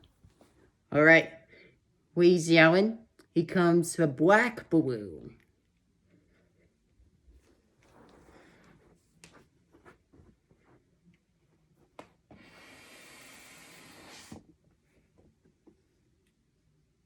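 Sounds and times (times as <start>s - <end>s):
air hissing through hand pump: 12.4s - 14.4s.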